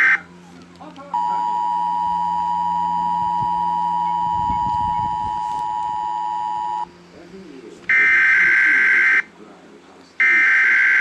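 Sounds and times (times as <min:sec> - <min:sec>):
two-tone electronic alert beep: 0:01.2 - 0:06.9.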